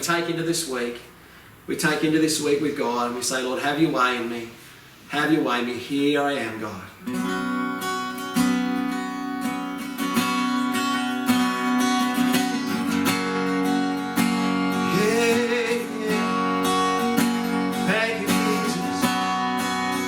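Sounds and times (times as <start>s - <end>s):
acoustic guitar strumming: 6.4s - 20.0s.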